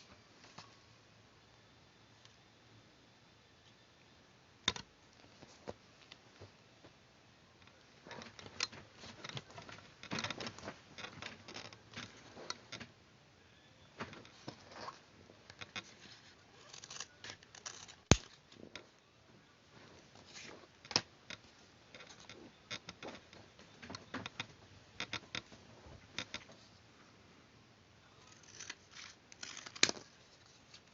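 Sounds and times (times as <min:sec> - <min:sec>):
paper rustling: 0:28.2 - 0:30.9
scissors cutting card: 0:28.3 - 0:30.0.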